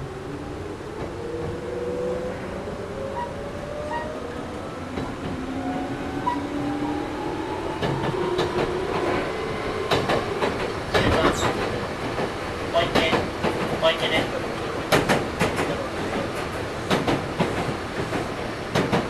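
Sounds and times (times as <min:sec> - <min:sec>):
wheels clacking over rail joints: 0:07.8 - 0:19.0.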